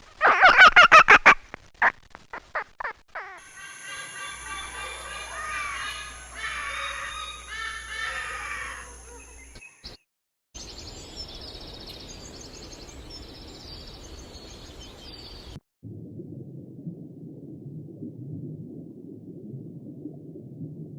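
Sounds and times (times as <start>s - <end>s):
outdoor noise: 0.0s - 10.0s
small birds chirping: 3.3s - 10.0s, 10.6s - 15.6s
crows cawing: 3.4s - 9.3s
muffled low underwater rumble: 15.8s - 20.9s.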